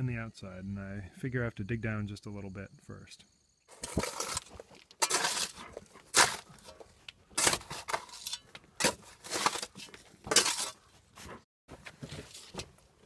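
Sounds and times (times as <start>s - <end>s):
shovel digging into stony ground: 3.7s - 10.9s.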